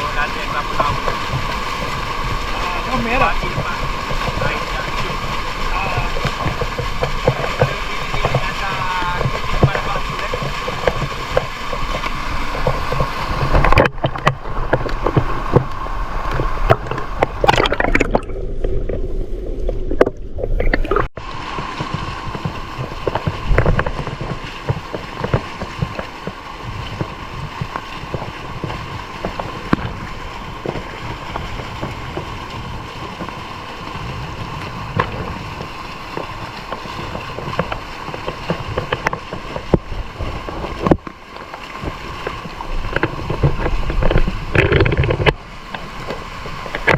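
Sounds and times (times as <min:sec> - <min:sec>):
stream rushing and gurgling: 0:00.0 - 0:46.9
small knocks and clicks: 0:34.9 - 0:46.9.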